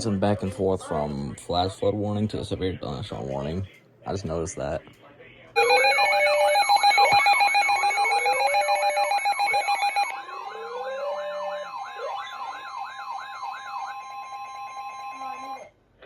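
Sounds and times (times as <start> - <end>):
electronic beeps: 5.6 - 10.1
sweeping electronic siren tone: 5.6 - 15.7
steady alarm tones: 5.6 - 15.8.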